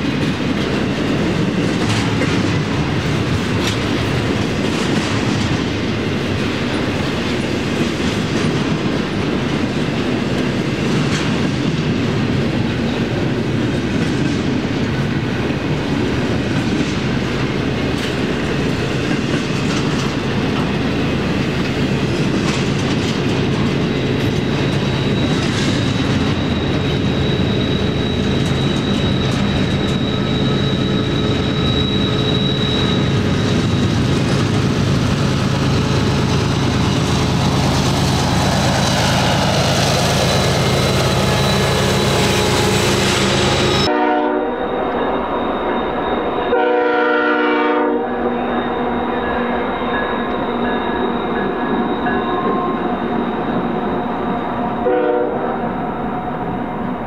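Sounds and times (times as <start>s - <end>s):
freight train wheel clatter: 0.0s - 44.0s
locomotive high whine: 0.0s - 57.0s.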